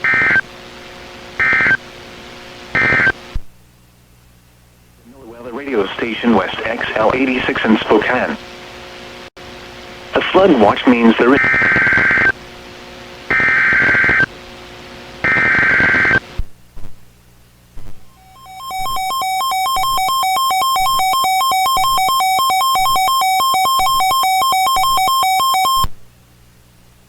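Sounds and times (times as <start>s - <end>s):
buzzy digital data tones: 1.4s - 1.8s, 10.9s - 12.4s, 13.3s - 14.3s, 15.2s - 16.2s, 18.1s - 25.9s
steady alarm tone: 15.2s - 16.2s, 18.1s - 25.9s.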